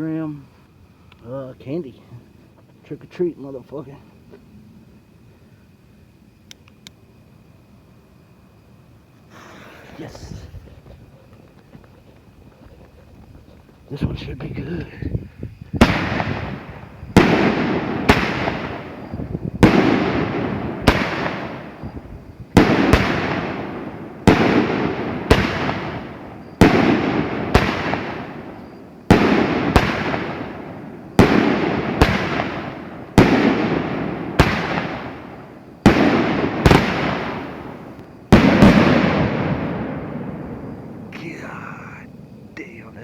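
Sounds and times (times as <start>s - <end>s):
firework shells bursting with bangs: 15.7s - 41.6s.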